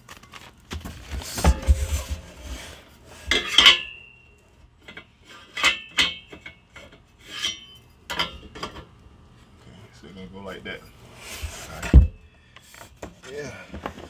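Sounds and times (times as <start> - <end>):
metal clinking on metal: 3.3 - 4.2.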